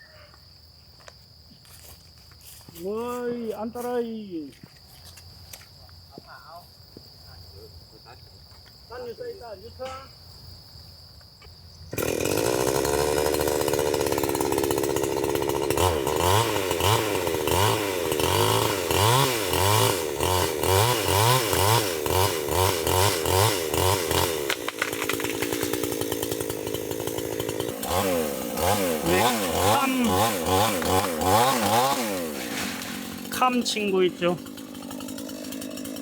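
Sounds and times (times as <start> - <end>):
chainsaw engine revving: 11.9 - 36.0.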